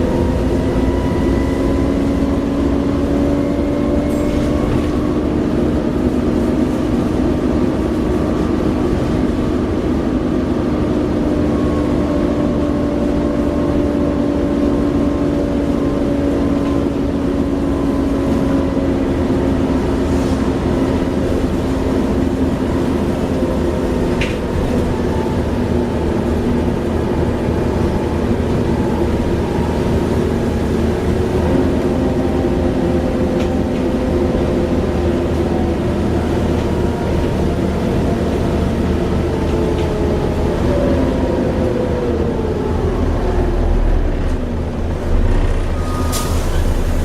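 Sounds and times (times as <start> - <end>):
diesel locomotive engine whine: 0.0 - 47.0
low engine rumble: 12.6 - 47.0.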